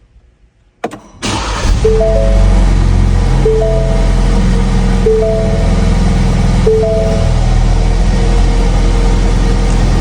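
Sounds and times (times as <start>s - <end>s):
car engine running: 1.4s - 10.0s
music with held notes: 1.8s - 4.4s.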